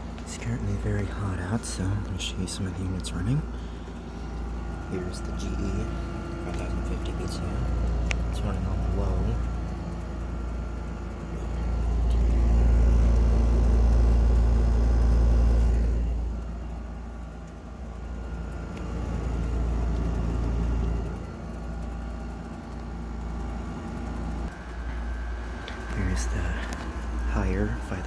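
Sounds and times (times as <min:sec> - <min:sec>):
heavy low rumble: 0:00.0 - 0:17.1, 0:24.5 - 0:28.0
air conditioner hum: 0:00.0 - 0:28.0.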